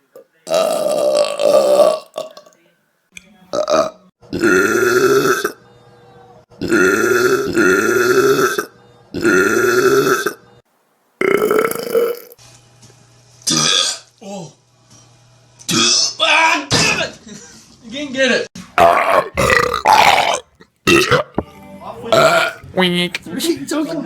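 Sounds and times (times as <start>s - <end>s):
loud drawn-out belches: 0.5s - 2.5s, 3.6s - 5.6s, 6.6s - 10.4s, 11.2s - 12.3s, 18.8s - 21.4s, 22.1s - 22.6s.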